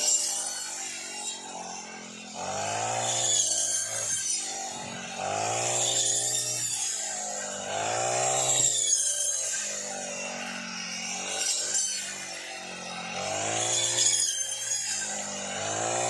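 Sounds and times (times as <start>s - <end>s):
brush cutter engine revving: 0.0s - 16.0s.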